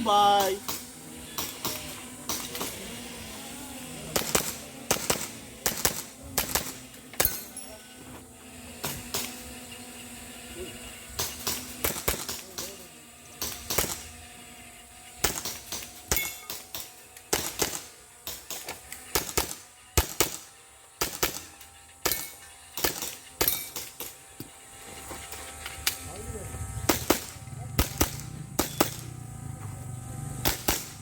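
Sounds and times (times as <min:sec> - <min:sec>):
airsoft pistol shots: 0:00.3 - 0:02.9, 0:04.1 - 0:07.6, 0:11.2 - 0:12.8, 0:13.4 - 0:14.2, 0:15.2 - 0:24.2, 0:26.8 - 0:29.2, 0:30.4 - 0:31.0.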